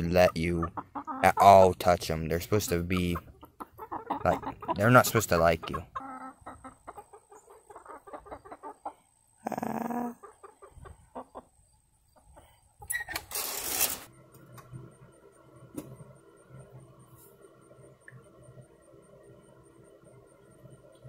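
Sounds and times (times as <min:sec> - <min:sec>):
chickens clucking: 0:00.0 - 0:13.3.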